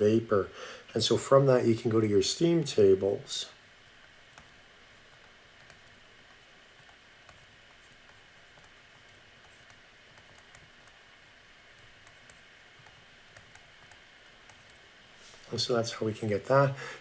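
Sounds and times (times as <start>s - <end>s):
low hiss: 0.0s - 17.0s
keyboard typing clicks: 4.3s - 11.0s, 11.7s - 14.8s.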